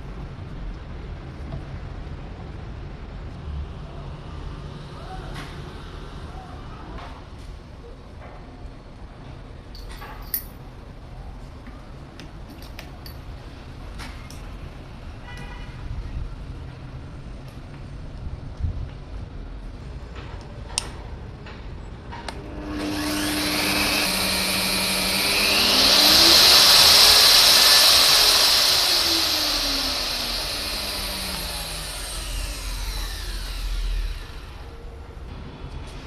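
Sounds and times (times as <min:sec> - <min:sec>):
magnetic drill motor running: 0:22.4 - 0:34.8.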